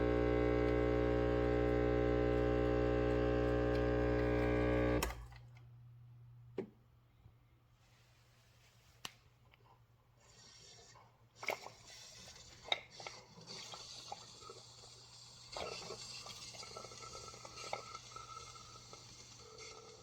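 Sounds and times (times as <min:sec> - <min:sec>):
espresso machine hissing: 0:00.0 - 0:05.1, 0:13.5 - 0:20.0
liquid running: 0:00.0 - 0:05.6, 0:10.9 - 0:20.0.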